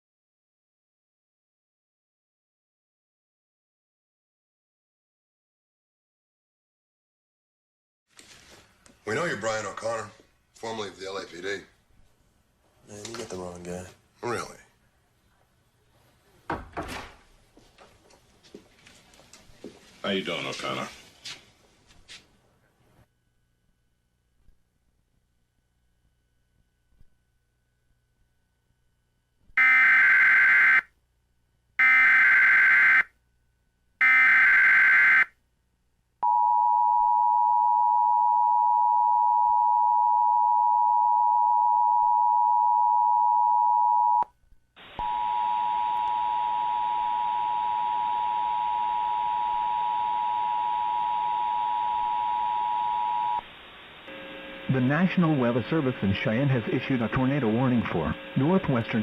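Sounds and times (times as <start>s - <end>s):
digital data bursts: 54.7s - 59.0s.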